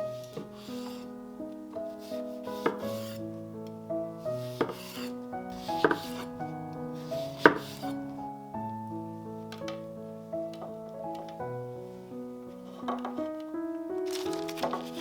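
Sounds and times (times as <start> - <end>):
soft background music: 0.0 - 15.0
sharp knocks and scrapes: 1.8 - 3.2, 4.4 - 6.4, 7.0 - 8.0, 12.5 - 13.4, 14.1 - 15.0.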